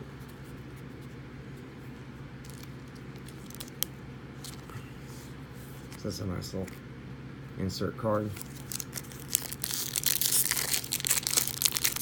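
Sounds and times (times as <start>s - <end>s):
steady low hum: 0.0s - 12.0s
cards rustling: 2.4s - 4.7s, 5.7s - 6.8s, 8.3s - 12.0s.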